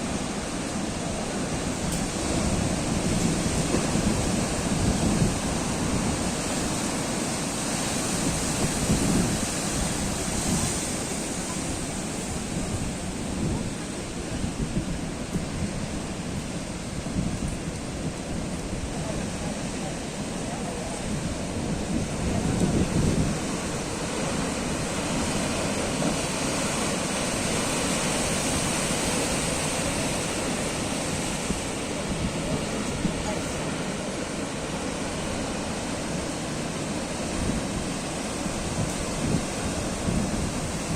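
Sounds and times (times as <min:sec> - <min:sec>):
surf breaking on shore: 0:00.0 - 0:40.9
wind buffeting microphone: 0:00.0 - 0:40.9.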